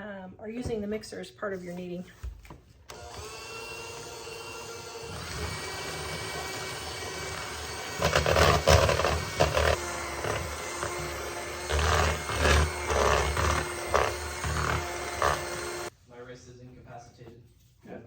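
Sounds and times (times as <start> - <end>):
electric hand mixer labouring: 2.9 - 15.9.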